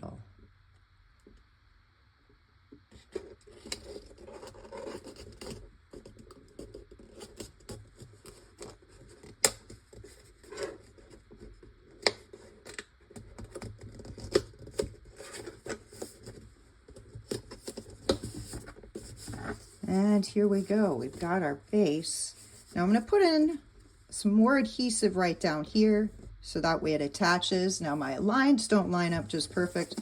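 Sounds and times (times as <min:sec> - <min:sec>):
paper rustling and scratching: 0:02.9 - 0:23.9, 0:29.0 - 0:30.0
hands tapping paper and plastic: 0:29.6 - 0:30.0.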